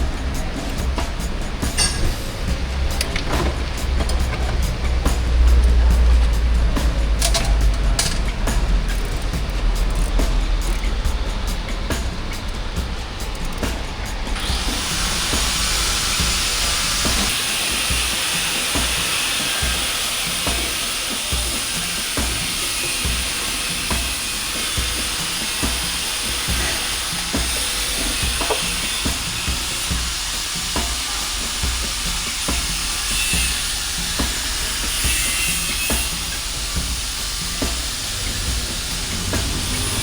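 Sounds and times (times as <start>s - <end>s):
hiss of rushing air: 8.3s - 40.0s.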